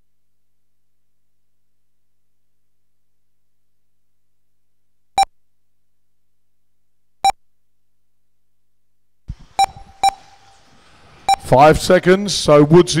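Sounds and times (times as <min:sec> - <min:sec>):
short electronic beeps: 0:09.6 - 0:10.6, 0:11.2 - 0:11.5.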